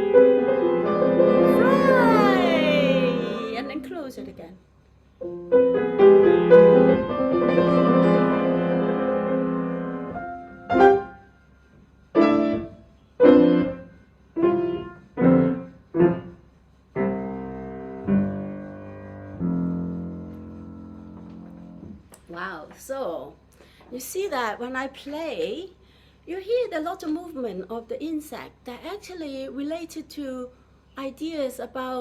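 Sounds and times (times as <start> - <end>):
solo piano: 0.0 - 3.8, 5.2 - 11.3, 12.2 - 16.4, 17.0 - 22.1.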